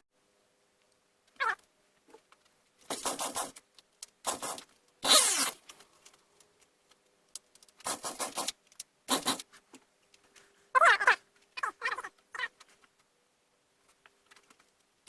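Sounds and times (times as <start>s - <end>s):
chainsaw starter cord pulls: 4.3s - 5.8s.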